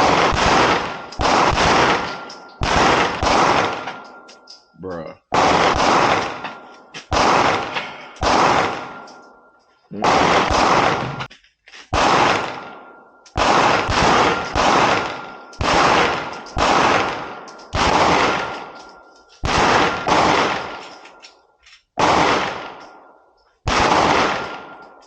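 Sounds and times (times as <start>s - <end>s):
handgun shots with echo: 0.0s - 4.2s, 5.3s - 9.3s, 10.0s - 11.3s, 12.0s - 21.2s, 23.7s - 24.9s.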